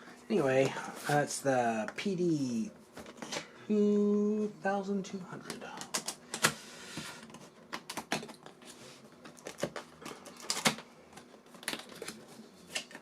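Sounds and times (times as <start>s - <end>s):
packaging being handled: 5.8s - 13.0s
packaging rustle: 7.2s - 13.0s.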